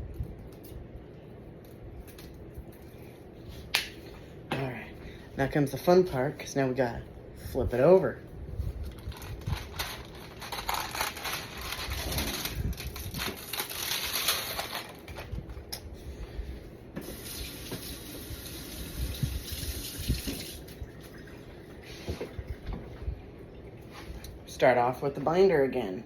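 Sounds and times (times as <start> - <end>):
tap water running into sink: 17.0 - 21.2.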